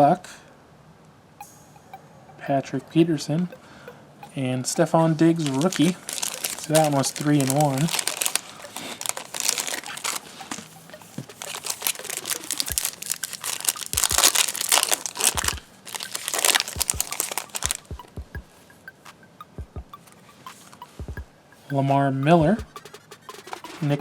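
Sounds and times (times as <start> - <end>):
foil wrapper tearing and crinkling: 5.3 - 17.9.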